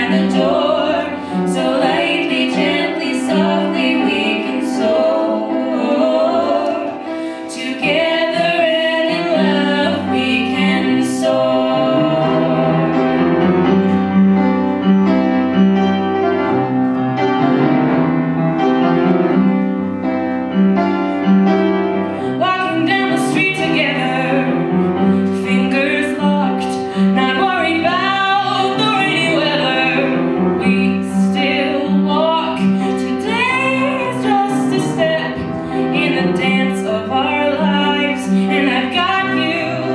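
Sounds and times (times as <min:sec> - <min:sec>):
two women singing: 0:00.0 - 0:13.3, 0:22.2 - 0:39.9
piano accompaniment: 0:00.0 - 0:39.9.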